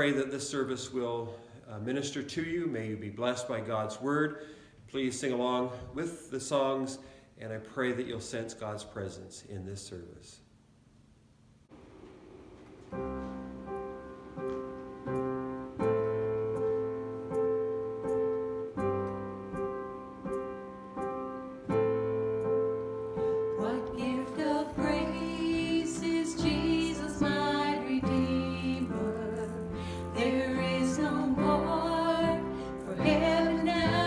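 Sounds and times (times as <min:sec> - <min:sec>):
piano chords: 0:12.7 - 0:34.0
person singing: 0:23.5 - 0:34.0.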